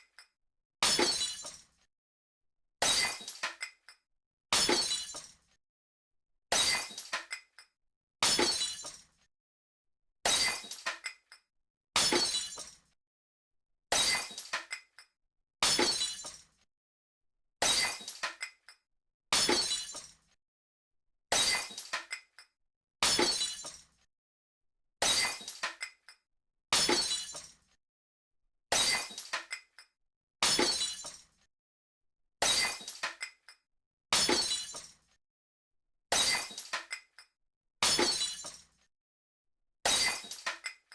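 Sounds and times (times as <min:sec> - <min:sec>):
glass shattering: 0:00.8 - 0:01.6, 0:02.8 - 0:03.6, 0:04.6 - 0:05.3, 0:06.5 - 0:07.2, 0:08.2 - 0:09.0, 0:10.3 - 0:11.1, 0:12.0 - 0:12.8, 0:13.9 - 0:14.8, 0:15.6 - 0:16.4, 0:17.6 - 0:18.5, 0:19.4 - 0:20.1, 0:21.3 - 0:22.2, 0:23.0 - 0:23.8, 0:25.0 - 0:25.9, 0:26.8 - 0:27.6, 0:28.7 - 0:29.6, 0:30.4 - 0:31.2, 0:32.4 - 0:33.3, 0:34.2 - 0:35.0, 0:36.1 - 0:37.0, 0:37.8 - 0:38.6, 0:39.9 - 0:40.8
glass smashing: 0:00.8 - 0:01.6, 0:02.8 - 0:03.4, 0:04.6 - 0:05.3, 0:06.5 - 0:07.2, 0:08.2 - 0:09.0, 0:10.3 - 0:10.9, 0:12.0 - 0:12.8, 0:13.9 - 0:14.6, 0:15.6 - 0:16.4, 0:17.6 - 0:18.3, 0:19.4 - 0:20.1, 0:21.3 - 0:22.0, 0:23.0 - 0:23.8, 0:25.0 - 0:25.7, 0:26.8 - 0:27.5, 0:28.7 - 0:29.6, 0:30.4 - 0:31.2, 0:32.4 - 0:33.3, 0:34.2 - 0:34.9, 0:36.1 - 0:37.0, 0:37.8 - 0:38.6, 0:39.9 - 0:40.7
tinkling glass shards: 0:19.5 - 0:20.1, 0:26.9 - 0:27.5, 0:32.5 - 0:33.3, 0:34.3 - 0:34.9, 0:36.2 - 0:37.0, 0:37.9 - 0:38.6, 0:39.9 - 0:40.8.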